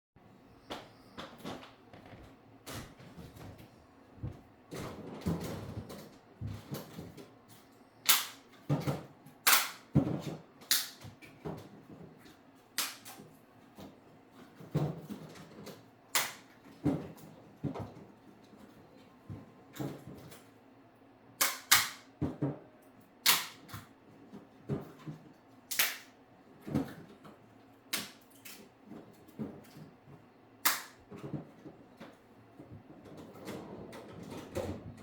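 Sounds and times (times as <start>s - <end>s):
sharp cracks: 25.7s - 26.1s.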